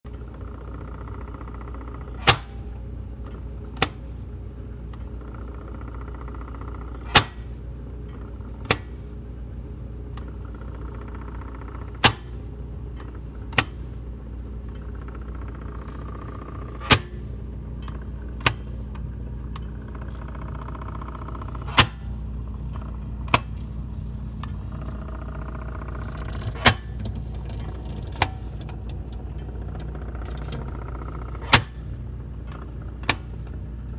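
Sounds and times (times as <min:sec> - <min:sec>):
refrigerator running hum: 0:00.1 - 0:33.9
refrigerator knocking: 0:12.0 - 0:12.5, 0:15.6 - 0:17.4, 0:20.0 - 0:32.0.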